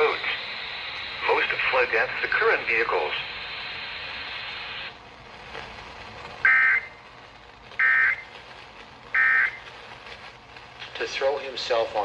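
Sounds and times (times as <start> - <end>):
harsh buzzing data burst: 0.0 - 5.4, 6.3 - 8.3, 9.0 - 9.6
radio static hiss: 0.0 - 12.0.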